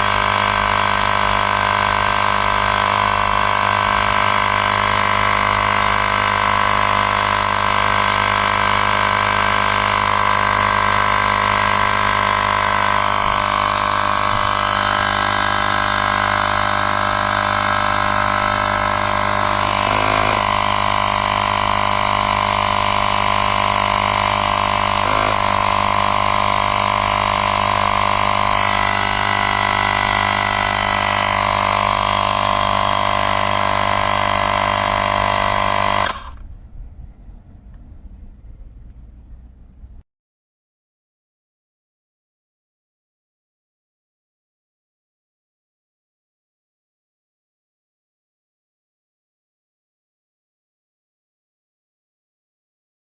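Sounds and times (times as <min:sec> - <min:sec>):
small air compressor humming: 0:00.0 - 0:36.7.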